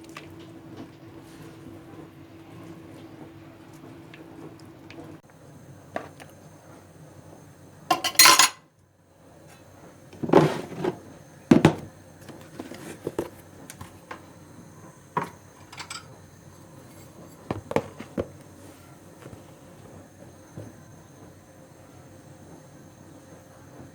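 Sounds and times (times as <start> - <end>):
dishes and cutlery clattering: 7.9 - 8.6, 15.2 - 16.1.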